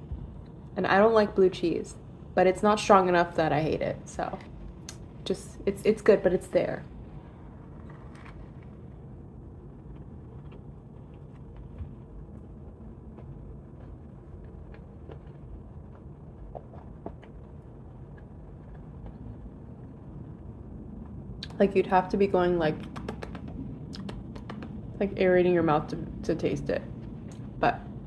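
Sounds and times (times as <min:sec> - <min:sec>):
low rumble: 0:00.0 - 0:28.0
chewing clicks and crunches: 0:09.9 - 0:19.4.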